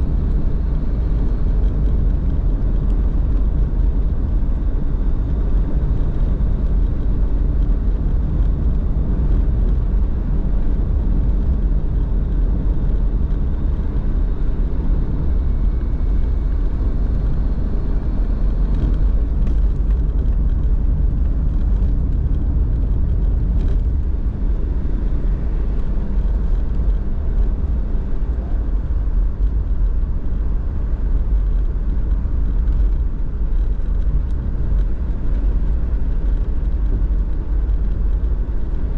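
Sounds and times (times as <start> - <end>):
car engine and tyres rumbling: 0.0 - 38.9.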